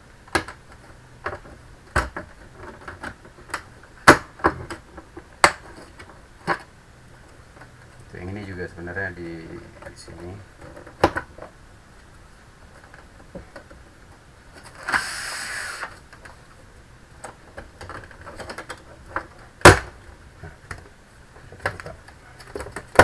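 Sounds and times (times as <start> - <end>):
scraping hiss: 14.6 - 16.1.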